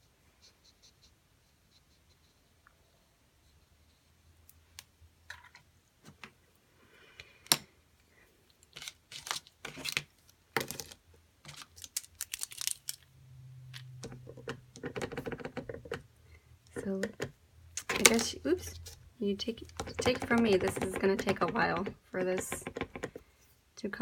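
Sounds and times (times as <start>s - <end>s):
marker clicking and rattling: 14.0s - 16.1s, 16.7s - 23.2s.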